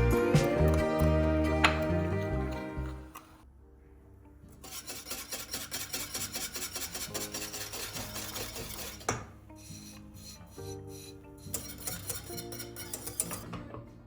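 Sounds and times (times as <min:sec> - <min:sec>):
rhythmic scrubbing strokes: 0:04.6 - 0:13.4.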